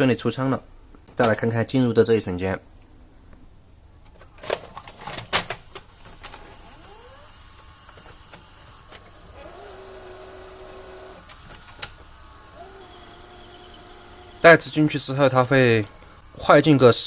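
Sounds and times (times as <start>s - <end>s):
tape motor whirring: 5.7s - 17.0s.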